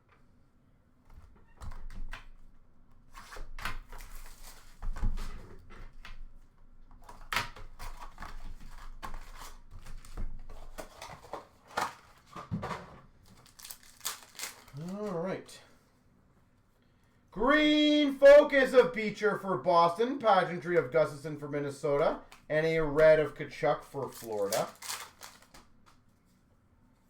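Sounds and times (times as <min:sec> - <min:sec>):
trading cards clicking and rustling: 0:13.3 - 0:15.3, 0:21.9 - 0:26.0.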